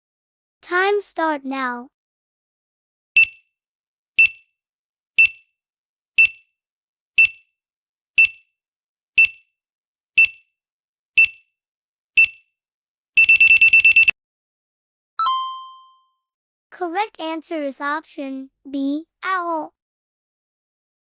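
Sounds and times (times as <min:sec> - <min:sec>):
high electronic timer beeps: 0:03.2 - 0:03.4, 0:04.2 - 0:04.4, 0:05.2 - 0:05.5, 0:06.2 - 0:06.4, 0:07.2 - 0:07.4, 0:08.2 - 0:08.4, 0:09.2 - 0:09.4, 0:10.2 - 0:10.4, 0:12.2 - 0:12.4, 0:13.2 - 0:14.1.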